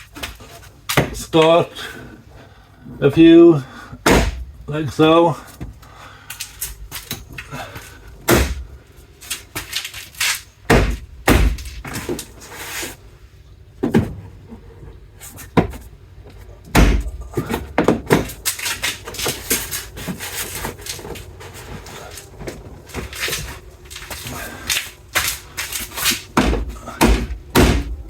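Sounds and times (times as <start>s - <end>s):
plastic panel knocks and snaps: 4.0s - 4.5s, 10.7s - 12.2s, 16.7s - 19.8s, 22.4s - 28.0s.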